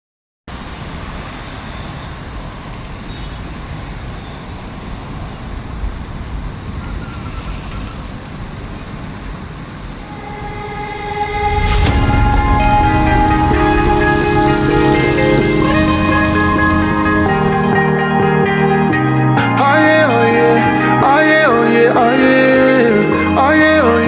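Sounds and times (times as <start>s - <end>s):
road traffic rumbling: 5.4s - 22.1s
held musical tones: 10.0s - 24.0s.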